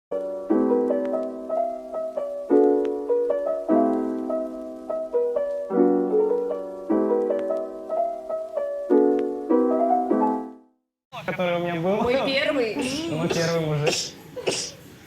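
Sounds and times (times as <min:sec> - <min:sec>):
piano chords and melody: 0:00.1 - 0:10.9.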